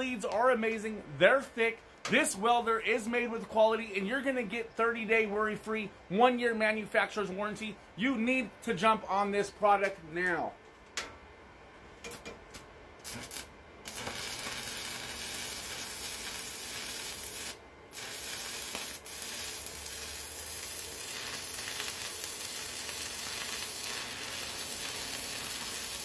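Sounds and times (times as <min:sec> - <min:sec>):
welding arc sizzling: 0:12.0 - 0:26.0.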